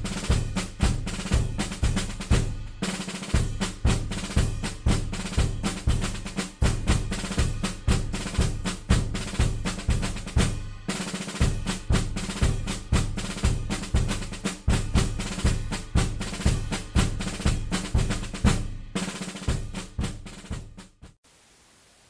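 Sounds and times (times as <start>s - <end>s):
percussion music with drums: 0.0s - 21.2s
snare drum rolls: 0.0s - 21.2s
faint hiss: 21.2s - 22.0s.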